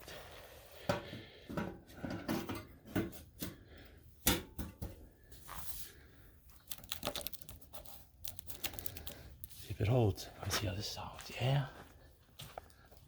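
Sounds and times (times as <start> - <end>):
hands handling parts: 6.5 - 9.8.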